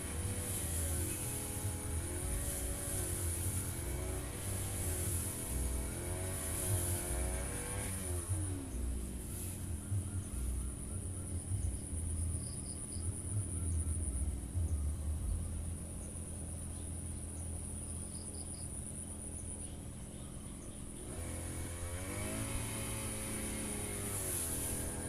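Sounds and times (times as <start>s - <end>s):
brush cutter engine running: 0.0s - 12.2s, 20.9s - 25.0s.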